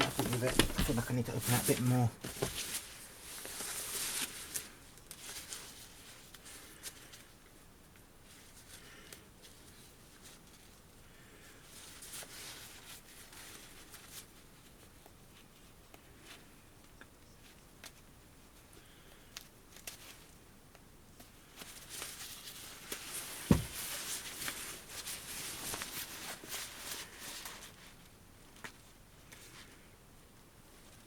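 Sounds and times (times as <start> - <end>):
backpack fabric rustling: 0.0 - 4.7, 21.6 - 27.8.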